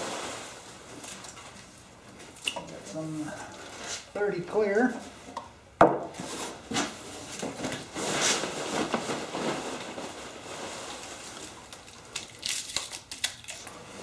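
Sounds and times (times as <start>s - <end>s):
hands rummaging through packing peanuts: 7.5s - 11.8s.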